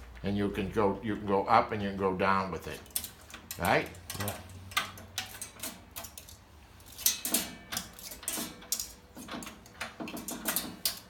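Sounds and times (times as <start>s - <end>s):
metal clicks and clanks: 2.6s - 11.0s.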